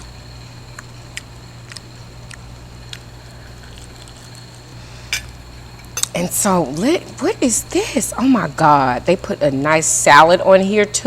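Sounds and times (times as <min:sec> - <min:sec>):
steady low hum: 0:00.0 - 0:11.0
chewing and mouth sounds: 0:00.7 - 0:04.8.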